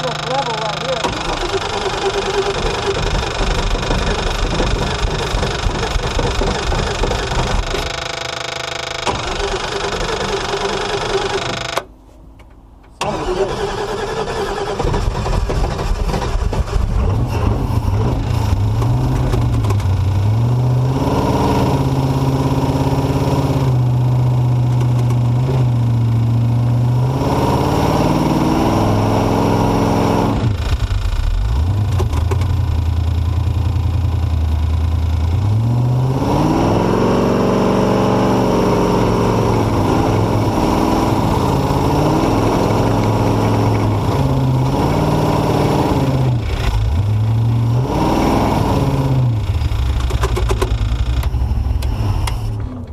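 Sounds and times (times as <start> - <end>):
truck engine revving under load: 13.0 - 52.9.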